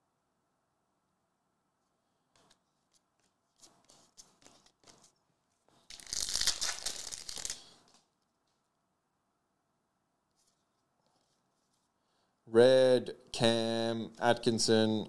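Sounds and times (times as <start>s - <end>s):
cards being handled: 2.3s - 8.7s, 10.3s - 12.0s
wrapper tearing with crinkle: 5.9s - 8.1s.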